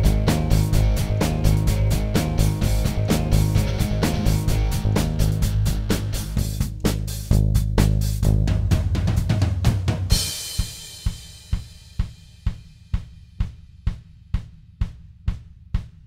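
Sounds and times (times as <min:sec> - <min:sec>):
steady drum beat: 0:00.0 - 0:16.0
cymbal crash: 0:10.1 - 0:12.5.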